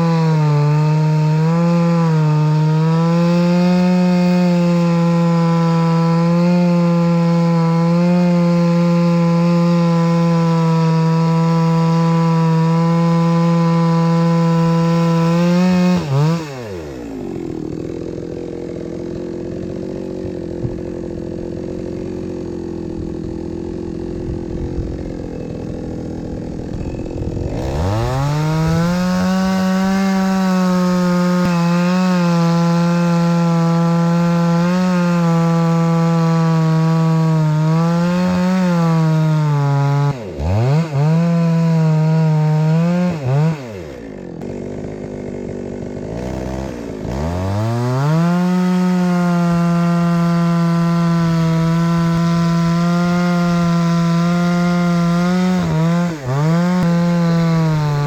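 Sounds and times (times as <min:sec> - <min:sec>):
small petrol engine running: 0:16.7 - 0:29.0.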